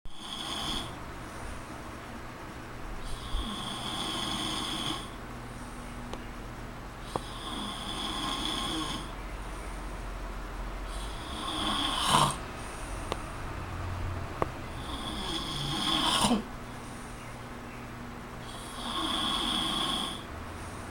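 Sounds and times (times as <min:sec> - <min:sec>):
man snoring: 0:00.1 - 0:01.0, 0:03.0 - 0:05.2, 0:07.0 - 0:09.1, 0:10.9 - 0:12.4, 0:14.7 - 0:16.5, 0:18.4 - 0:20.3.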